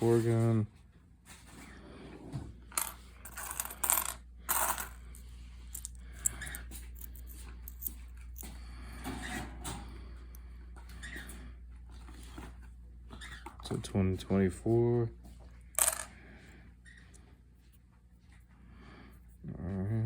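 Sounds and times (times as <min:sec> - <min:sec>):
coins clinking: 0:02.8 - 0:08.0, 0:15.8 - 0:16.0.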